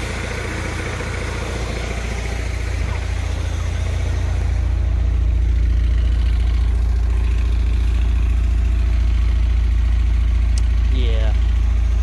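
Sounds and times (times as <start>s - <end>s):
car engine idling: 0.0s - 12.0s.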